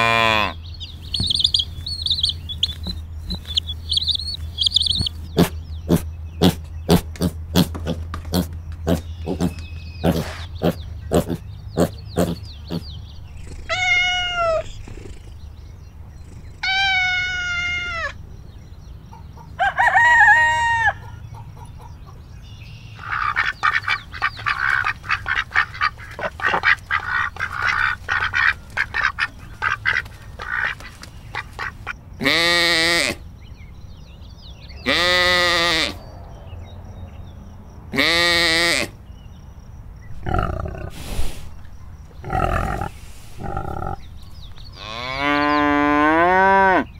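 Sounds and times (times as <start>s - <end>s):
fowl calling: 0.0s - 7.0s, 22.9s - 33.2s
fowl chattering calls: 0.0s - 15.2s, 22.9s - 33.2s.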